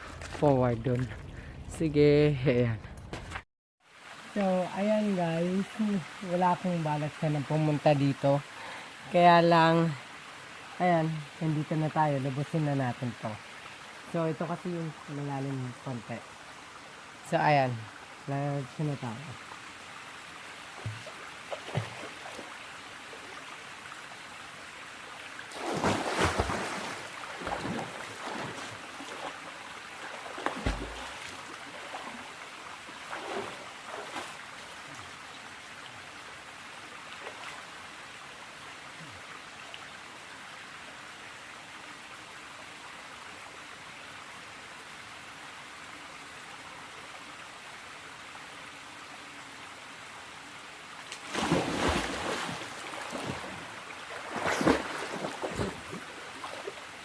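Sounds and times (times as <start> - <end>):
stream rushing: 3.8 - 43.2, 44.4 - 57.0
water splashes: 20.5 - 23.5, 25.2 - 35.6, 37.0 - 37.8, 51.1 - 57.0.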